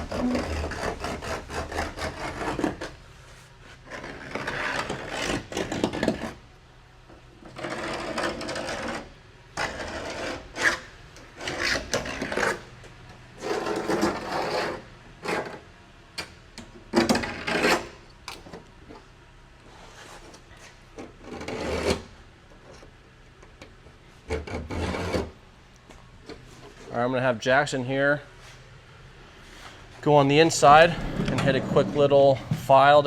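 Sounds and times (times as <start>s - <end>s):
file scraping steel edge: 0.0s - 2.9s.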